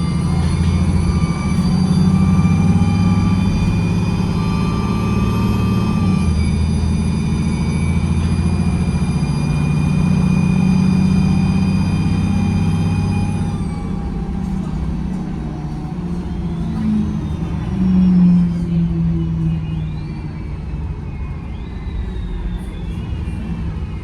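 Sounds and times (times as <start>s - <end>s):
high whine: 0.0s - 18.8s
bus diesel engine under load: 0.0s - 24.0s.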